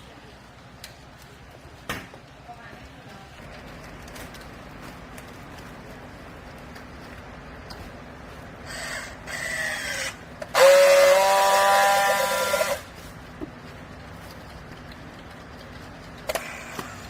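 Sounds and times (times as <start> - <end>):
machine whining burst: 8.7 - 12.9.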